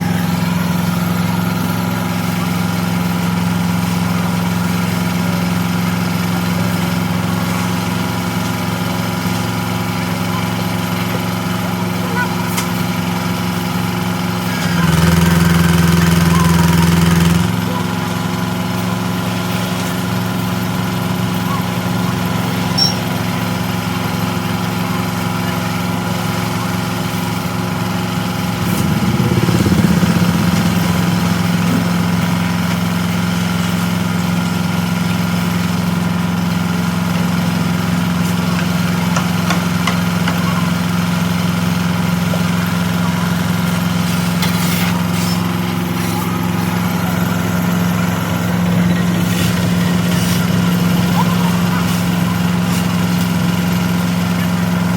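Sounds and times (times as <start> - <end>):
engine humming: 14.4 - 18.1, 26.6 - 33.8, 43.1 - 54.9.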